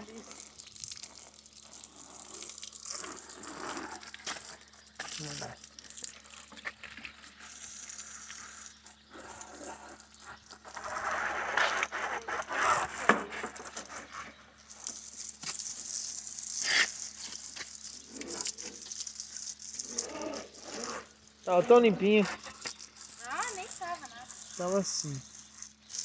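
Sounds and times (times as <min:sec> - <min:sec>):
water splashing on motorcycle: 0:00.0 - 0:10.7, 0:14.9 - 0:21.4.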